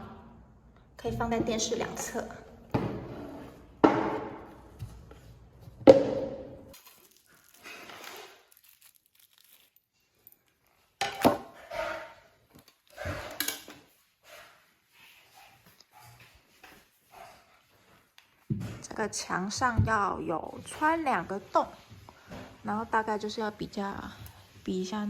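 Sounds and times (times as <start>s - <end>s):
packaging crinkling and rustling: 6.7s - 10.6s.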